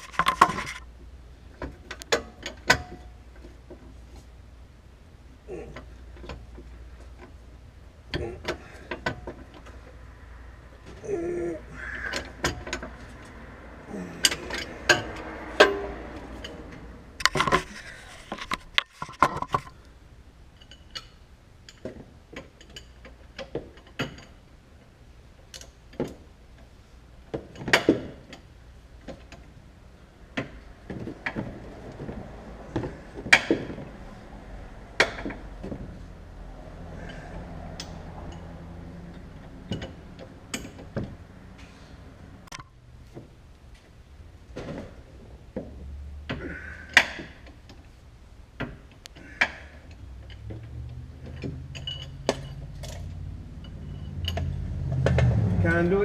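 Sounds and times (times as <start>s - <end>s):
hand tools clinking on metal: 51.2s - 54.6s.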